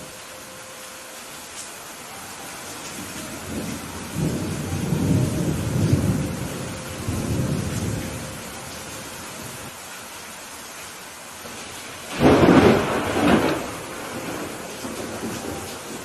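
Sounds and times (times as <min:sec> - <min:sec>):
steady rain falling: 0:00.0 - 0:16.0
thunder rumble: 0:02.9 - 0:09.7, 0:11.5 - 0:16.0.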